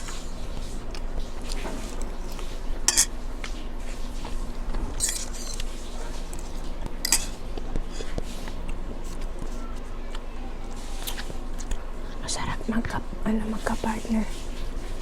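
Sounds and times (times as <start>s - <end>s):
steady low hum: 0.0s - 15.0s
utensil scraping and clinking dish: 2.8s - 3.2s, 5.0s - 5.8s, 7.0s - 8.1s.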